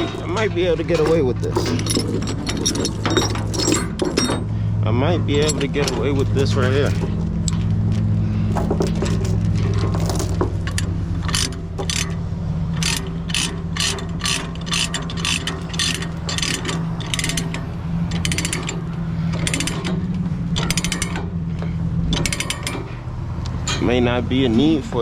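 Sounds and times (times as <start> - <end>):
steady low drone: 0.0 - 25.0
ratchet pawl clicking: 12.8 - 20.0.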